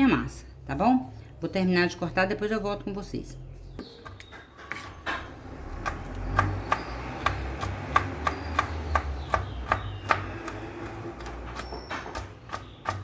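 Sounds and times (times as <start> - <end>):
knife chopping nuts on a board: 3.8 - 13.0.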